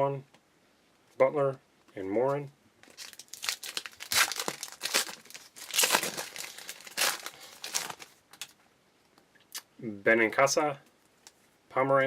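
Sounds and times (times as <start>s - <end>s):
wrapper crinkling and tearing: 2.8s - 8.5s.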